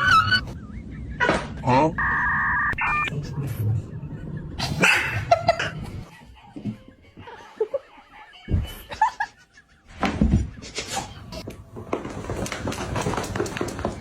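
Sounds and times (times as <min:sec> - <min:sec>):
person laughing: 0:04.2 - 0:06.1.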